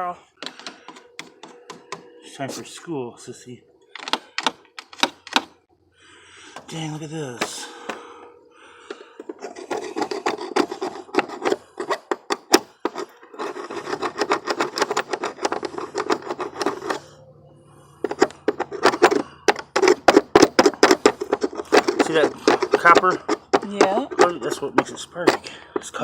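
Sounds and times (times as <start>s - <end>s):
metal tool scraping battery terminals: 0.3s - 2.8s, 3.9s - 5.6s, 8.8s - 17.2s, 18.0s - 26.0s.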